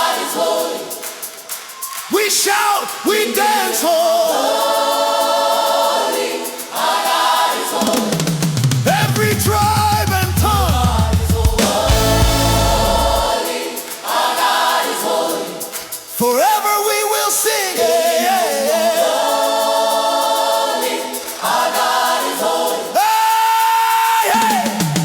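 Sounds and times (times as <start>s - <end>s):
gospel choir singing chords: 0.0s - 25.0s
drums and bass: 8.2s - 13.4s.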